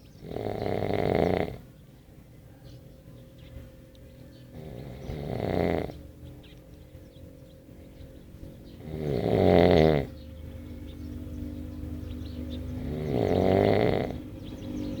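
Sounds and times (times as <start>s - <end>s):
heavy snoring: 0.2s - 1.7s, 4.5s - 6.0s, 8.8s - 10.2s, 12.7s - 14.4s.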